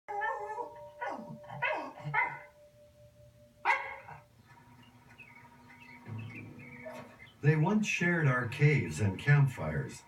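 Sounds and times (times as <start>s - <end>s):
dog barking and yelping: 0.1s - 2.6s, 3.6s - 4.3s, 6.8s - 7.2s.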